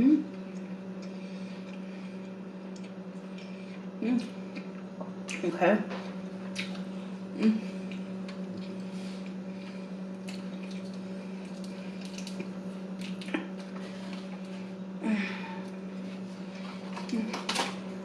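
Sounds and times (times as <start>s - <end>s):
low electrical hum: 0.0s - 18.0s
wet chewing sounds: 6.4s - 6.9s, 7.8s - 14.7s.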